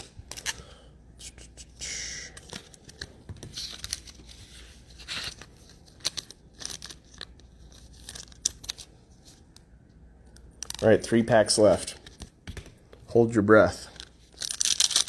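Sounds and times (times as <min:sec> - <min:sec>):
plastic wrappers crinkling: 0:02.5 - 0:08.9, 0:13.8 - 0:15.0
tearing rustles: 0:14.0 - 0:15.0.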